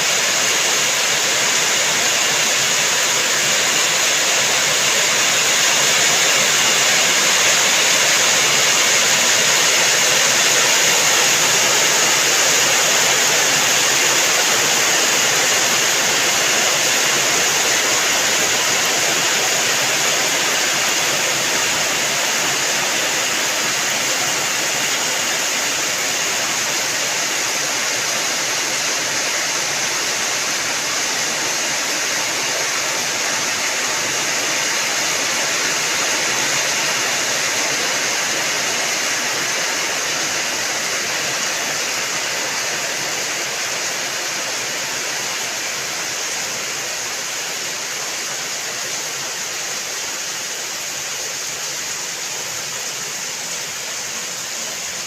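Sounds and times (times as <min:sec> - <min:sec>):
falling rain hiss: 0:00.0 - 0:55.0.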